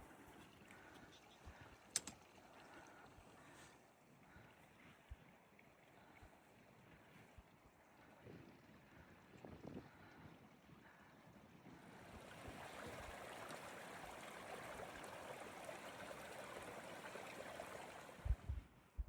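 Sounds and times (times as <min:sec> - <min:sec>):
flowing water rushing: 0:11.9 - 0:18.5.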